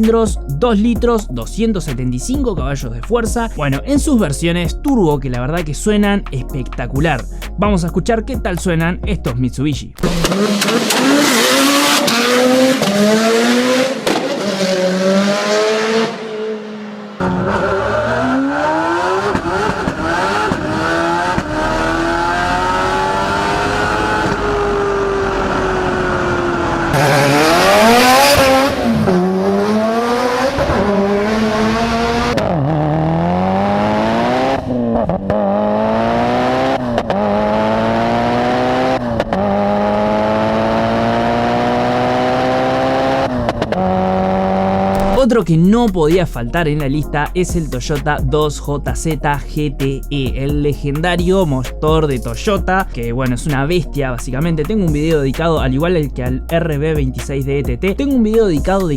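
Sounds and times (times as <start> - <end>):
car engine revving and accelerating: 10.0 - 46.2.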